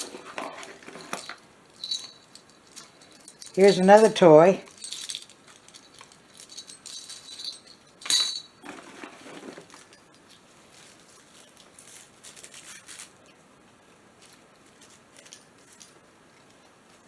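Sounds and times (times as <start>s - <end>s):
items clinking and rattling: 0.0s - 13.1s, 14.2s - 16.0s.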